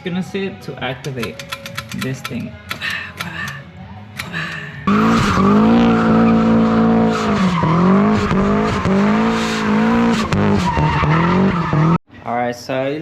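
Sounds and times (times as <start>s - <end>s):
car engine at high revs: 4.8s - 12.0s.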